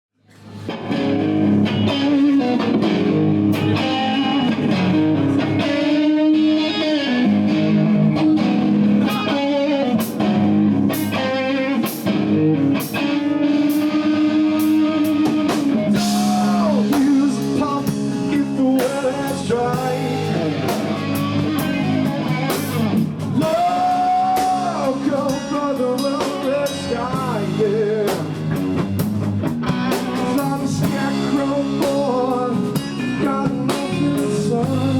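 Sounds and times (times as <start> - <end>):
electric guitar: 0.2 - 34.9
person singing: 13.1 - 22.8, 23.4 - 28.5, 30.2 - 34.9
drum kit with cymbals: 14.6 - 34.9.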